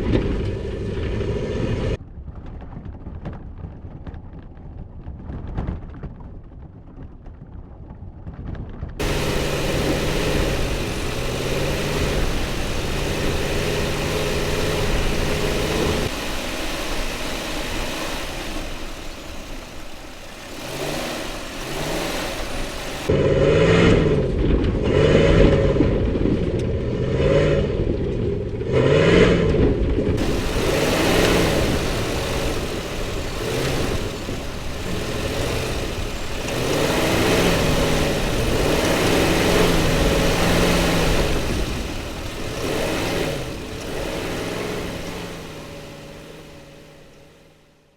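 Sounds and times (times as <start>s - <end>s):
pickup engine revving: 9.0s - 26.1s, 28.6s - 47.7s.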